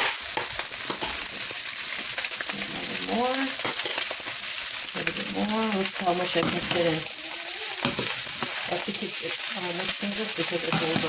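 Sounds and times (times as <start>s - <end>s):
rice sizzling in a wok: 0.0s - 11.0s
stirring clicks and scrapes: 3.6s - 4.4s, 7.8s - 9.0s.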